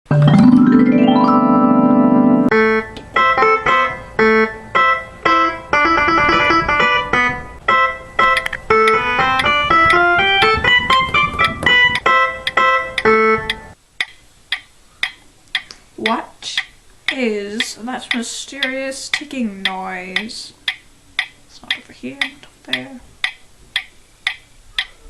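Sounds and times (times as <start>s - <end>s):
electronic keyboard music: 0.1s - 13.8s.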